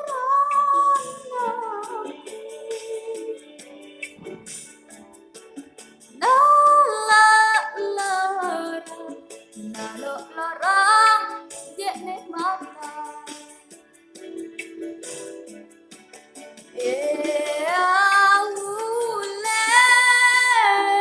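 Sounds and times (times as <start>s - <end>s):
woman singing in high voice: 0.0s - 3.5s, 6.2s - 13.6s, 16.8s - 21.0s.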